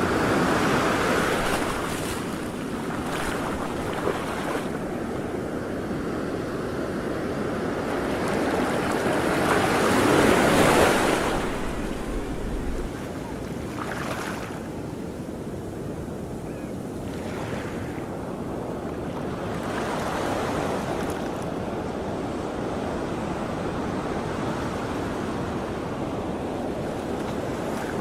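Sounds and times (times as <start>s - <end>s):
waves washing: 0.0s - 14.8s
wind: 0.0s - 28.0s
wind buffeting microphone: 7.4s - 13.4s.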